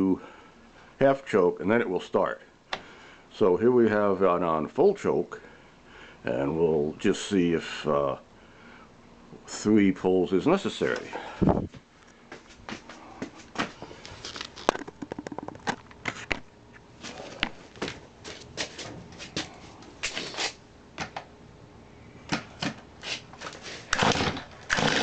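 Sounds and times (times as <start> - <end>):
chainsaw rattling and clicking: 23.9 - 25.0
starter cord rasping pulls: 23.9 - 25.0.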